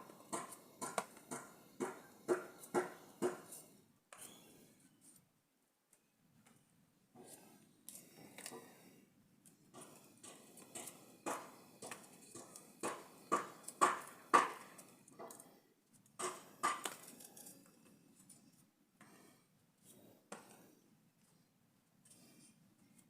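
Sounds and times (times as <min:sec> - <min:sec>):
kitchen work knocks and scrapes: 0:00.0 - 0:03.6, 0:09.7 - 0:15.4, 0:16.2 - 0:17.2.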